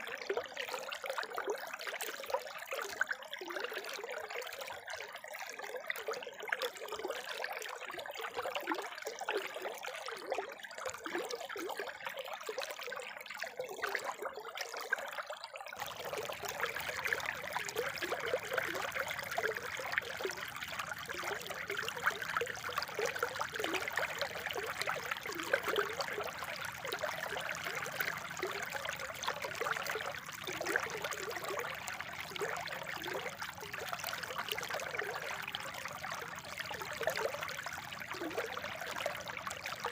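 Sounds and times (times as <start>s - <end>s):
spring water trickling and bubbling: 0.0s - 39.9s.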